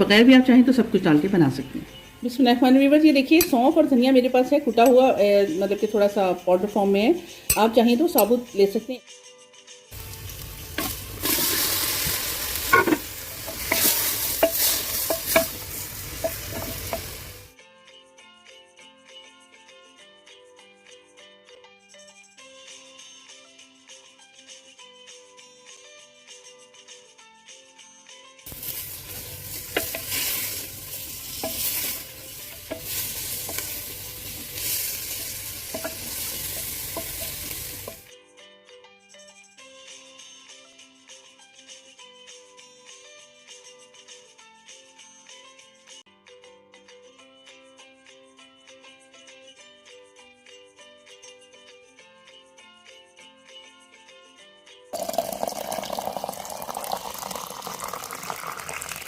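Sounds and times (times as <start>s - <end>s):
background music: 0.0s - 59.0s
food sizzling in a pot: 9.9s - 17.6s, 28.5s - 38.1s, 55.0s - 59.0s
spoon knocking against pot: 12.6s - 17.3s, 28.5s - 38.0s.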